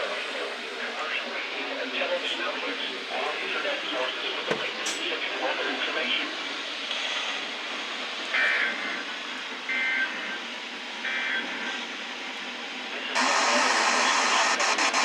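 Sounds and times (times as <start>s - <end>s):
radio hiss: 13.0s - 15.0s.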